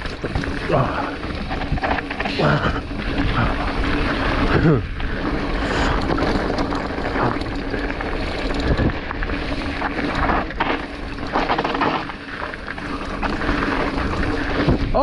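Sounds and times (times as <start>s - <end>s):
knocks and rattles: 10.2s - 12.2s.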